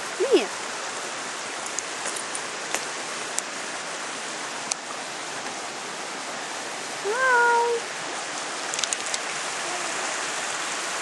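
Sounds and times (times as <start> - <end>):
running water hiss: 0.0 - 11.0
faint clicks: 8.7 - 9.2.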